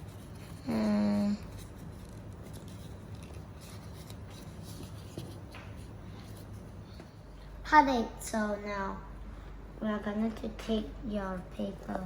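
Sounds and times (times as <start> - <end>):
paper rustling and crinkling: 0.0 - 6.6.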